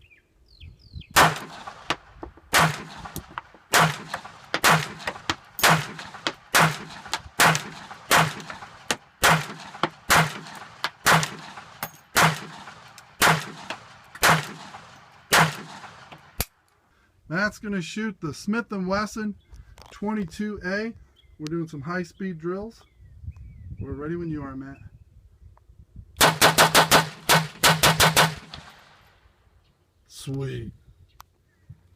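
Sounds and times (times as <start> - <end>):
pistol shots: 1.2 - 16.5, 26.2 - 29.0.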